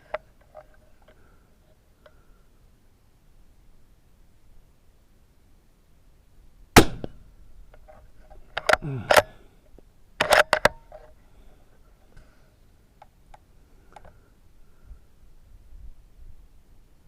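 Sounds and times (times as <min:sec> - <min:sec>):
suppressed rifle shot: 0:06.8 - 0:07.3.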